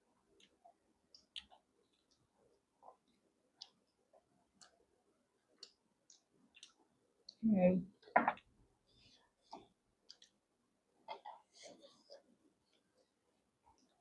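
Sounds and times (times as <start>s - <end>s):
mouth clicks of chewing: 0.4s - 2.2s, 5.6s - 7.4s, 10.1s - 10.4s.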